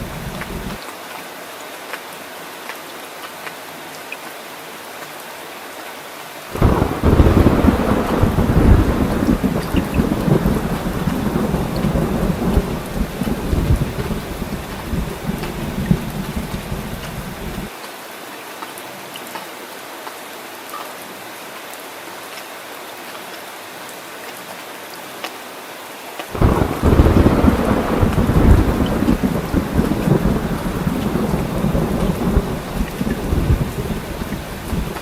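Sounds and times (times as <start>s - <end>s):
heavy rain hissing: 0.0s - 0.8s, 6.4s - 17.8s, 26.3s - 35.0s
thunder rumbling: 0.0s - 0.8s, 6.6s - 17.7s, 26.4s - 35.0s.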